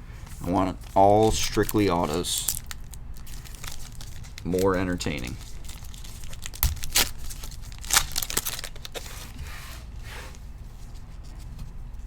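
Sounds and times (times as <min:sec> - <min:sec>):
foil wrappers crinkling and tearing: 0:00.4 - 0:09.4.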